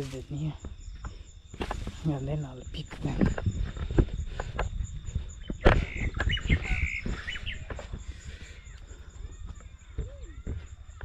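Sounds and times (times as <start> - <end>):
knocks and rustles of weed stems: 0.0 - 4.8
small birds chirping: 0.0 - 11.0.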